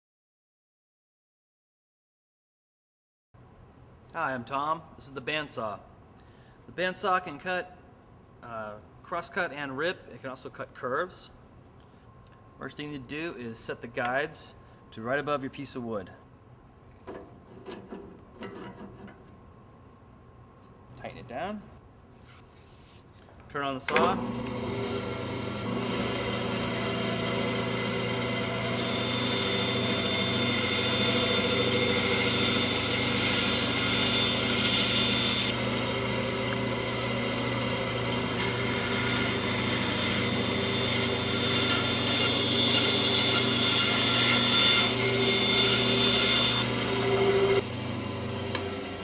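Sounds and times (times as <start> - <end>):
band saw motor hum: 24.0 - 49.0
saw blade cutting wood: 24.1 - 47.6.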